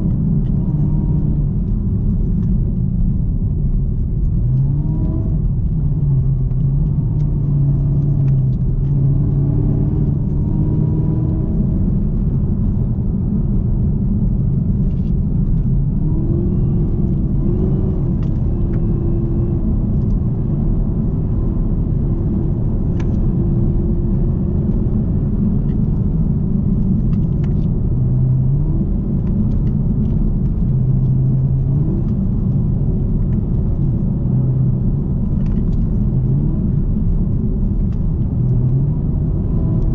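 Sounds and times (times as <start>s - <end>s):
car engine rumble: 0.0s - 39.9s.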